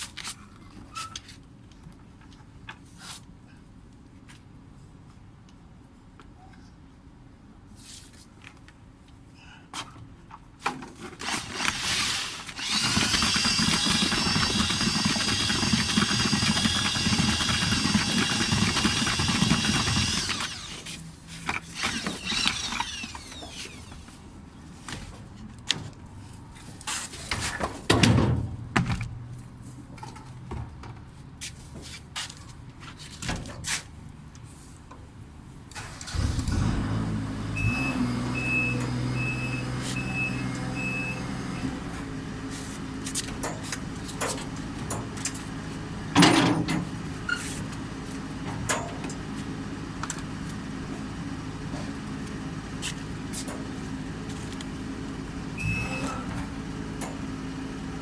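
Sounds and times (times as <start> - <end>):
power tool motor running: 11.2 - 21.0, 21.7 - 24.1.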